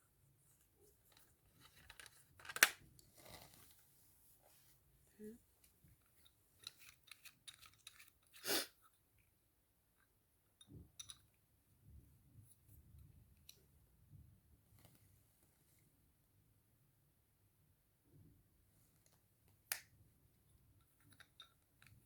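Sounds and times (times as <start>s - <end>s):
parts and packaging clicking: 1.1s - 2.8s, 6.6s - 8.4s.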